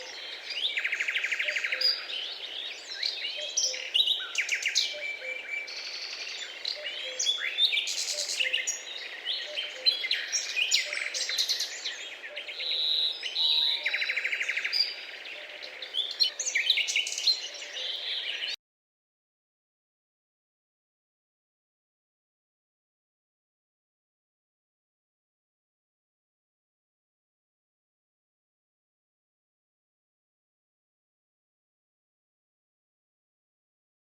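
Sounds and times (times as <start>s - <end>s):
songbirds chirping and whistling: 0.0s - 18.6s.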